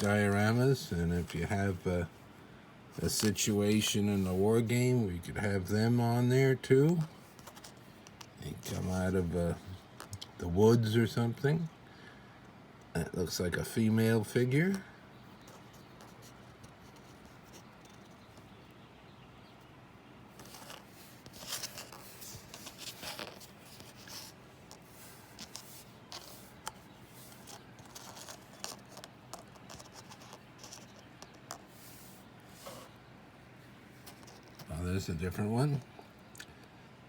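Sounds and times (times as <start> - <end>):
quiet room hiss: 0.0 - 37.0
plastic figures and packaging rustling: 20.4 - 32.9, 34.0 - 34.7.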